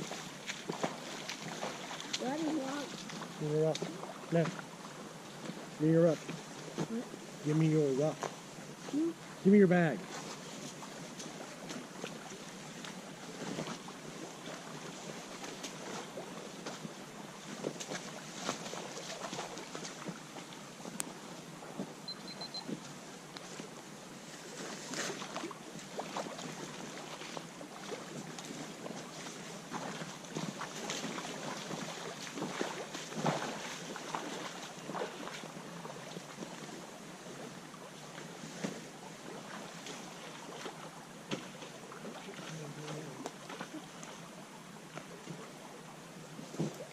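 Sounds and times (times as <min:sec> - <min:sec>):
short splashes: 0:00.0 - 0:07.0, 0:09.8 - 0:20.4, 0:24.4 - 0:36.8
stream water rushing: 0:00.0 - 0:46.9.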